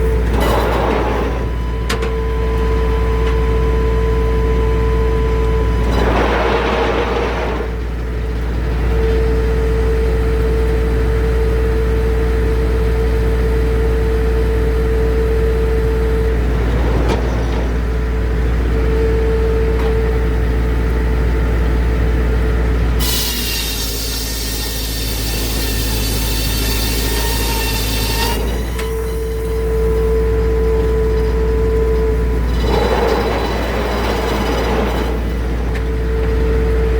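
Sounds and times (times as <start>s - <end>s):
saw blade whine: 22.9s - 36.9s.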